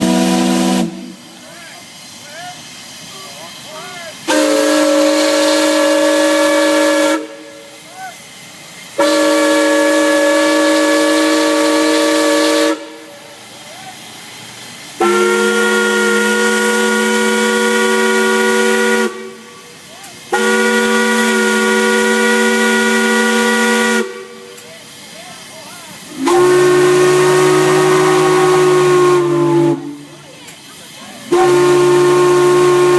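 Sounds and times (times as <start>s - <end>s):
chord whistle blasts: 4.3s - 7.9s, 26.1s - 30.1s.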